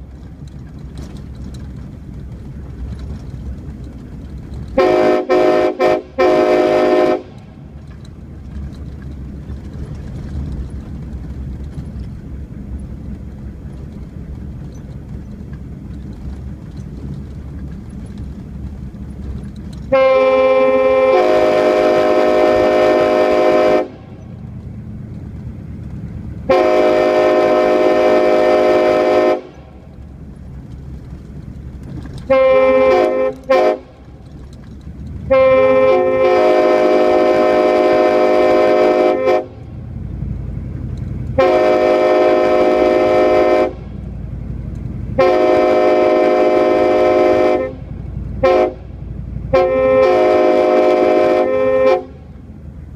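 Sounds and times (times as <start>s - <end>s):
low rumble: 0.0s - 52.9s
locomotive air horn blasts: 4.7s - 7.7s, 19.9s - 24.4s, 26.5s - 29.8s, 32.2s - 34.1s, 35.2s - 39.8s, 41.4s - 44.0s, 45.2s - 52.4s.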